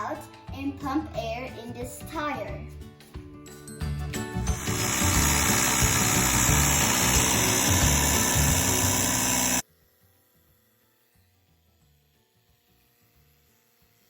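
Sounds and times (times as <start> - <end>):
background music: 0.0 - 9.2
air pump hissing: 4.6 - 9.6.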